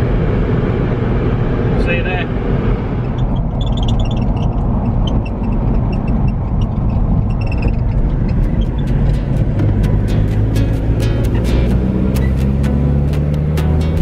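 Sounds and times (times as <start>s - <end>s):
engine and road rumble: 0.0s - 14.0s
high ticks: 3.7s - 14.0s.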